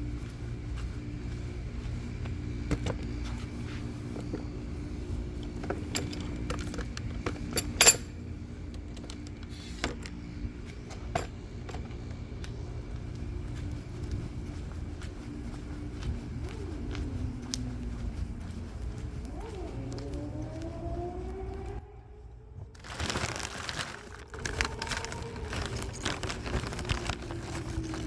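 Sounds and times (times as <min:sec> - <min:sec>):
low hum: 0:00.0 - 0:28.0
clicks clinks and knocks: 0:05.6 - 0:08.1.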